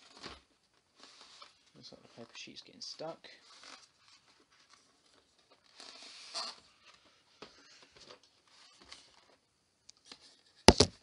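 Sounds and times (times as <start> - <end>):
paper packaging rustling: 0.0 - 7.2.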